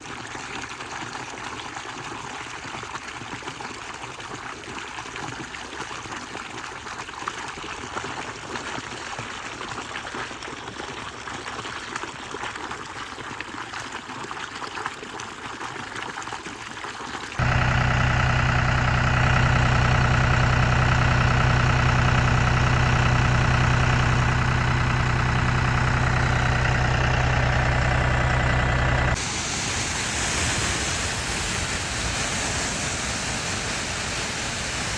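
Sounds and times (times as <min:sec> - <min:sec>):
sprayer engine running: 0:17.4 - 0:34.9
steady rushing hiss: 0:29.2 - 0:34.9.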